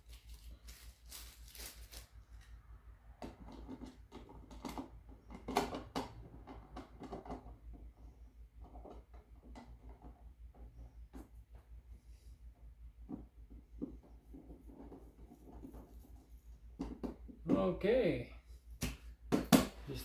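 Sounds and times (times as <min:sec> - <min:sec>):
plastic cover plate clicking and scraping: 0:03.2 - 0:10.2.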